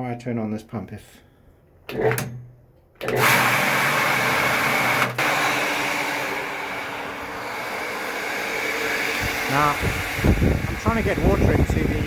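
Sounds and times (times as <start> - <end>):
electric water pump running: 3.0 - 12.0.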